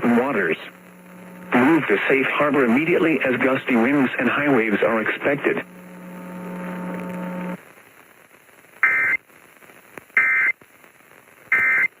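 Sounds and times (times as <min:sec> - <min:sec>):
low radio hum: 0:00.0 - 0:12.0.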